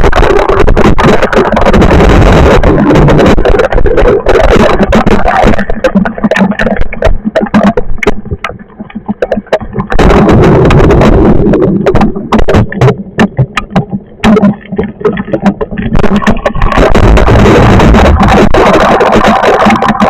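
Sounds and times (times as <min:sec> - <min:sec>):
dense crackle of sharp hits: 0:00.0 - 0:20.0
wind buffeting microphone: 0:15.7 - 0:19.2.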